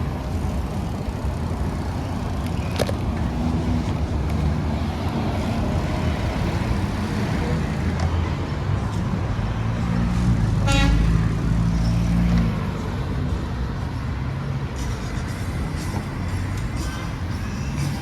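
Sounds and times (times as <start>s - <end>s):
traffic rumbling past: 0.0s - 18.0s
car horn honk: 10.6s - 11.1s.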